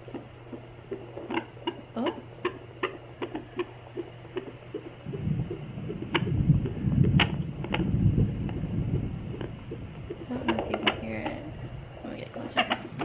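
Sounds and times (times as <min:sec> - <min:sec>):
fetal heartbeat whooshing pulses: 0:00.0 - 0:13.0
low rumbling whoosh from speaker: 0:05.0 - 0:13.0.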